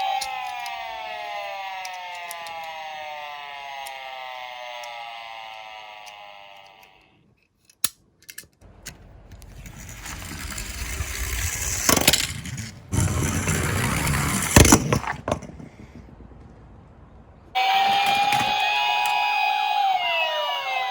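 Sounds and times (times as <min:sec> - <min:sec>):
toy cars rolling down slope: 0:00.0 - 0:07.1, 0:08.8 - 0:16.5, 0:17.6 - 0:20.9
toy siren: 0:00.0 - 0:07.2, 0:17.6 - 0:20.9.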